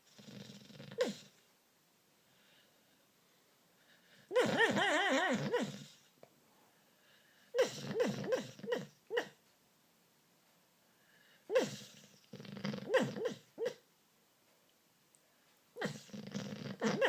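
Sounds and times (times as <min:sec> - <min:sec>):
dog yipping and whimpering: 0:00.9 - 0:01.3, 0:04.3 - 0:06.0, 0:07.6 - 0:09.4, 0:11.5 - 0:12.0, 0:12.7 - 0:13.8, 0:15.8 - 0:17.0.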